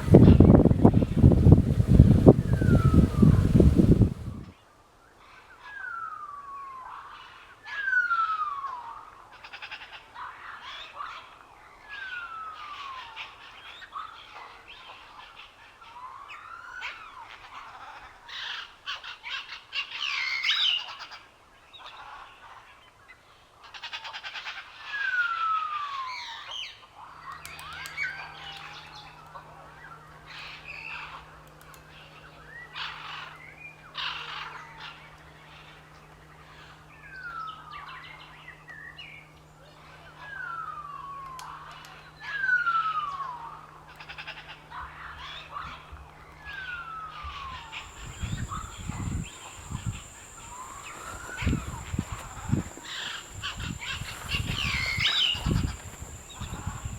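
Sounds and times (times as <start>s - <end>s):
wild birds chirping: 0.0s - 4.5s, 46.4s - 56.9s
faint low hum: 43.2s - 56.9s.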